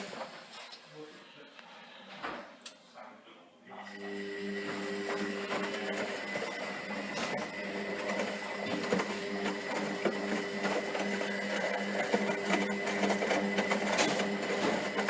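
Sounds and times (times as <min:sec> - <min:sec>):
washing machine motor hum: 0:03.9 - 0:15.0.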